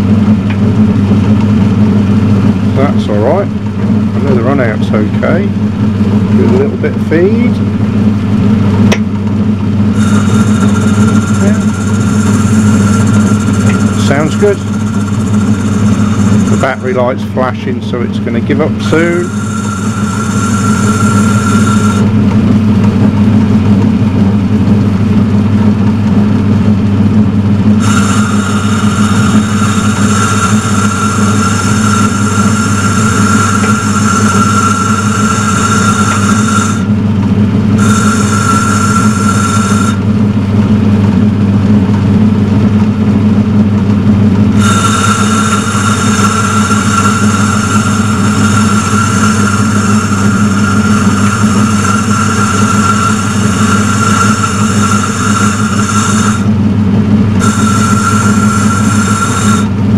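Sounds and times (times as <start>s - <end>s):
high-pitched lathe whine: 0.0s - 59.9s
metal lathe low drone: 0.0s - 59.9s.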